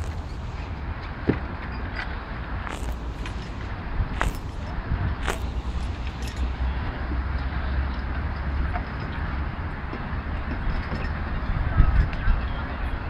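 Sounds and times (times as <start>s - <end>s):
faint clicks: 2.6s - 6.6s.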